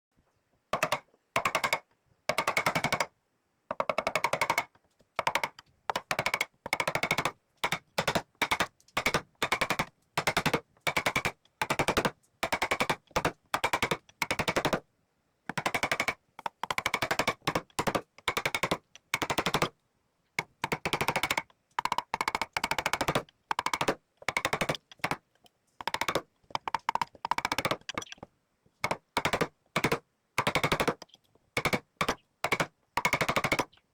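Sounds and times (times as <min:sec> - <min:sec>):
rapid rattling clicks: 0:20.4 - 0:33.7.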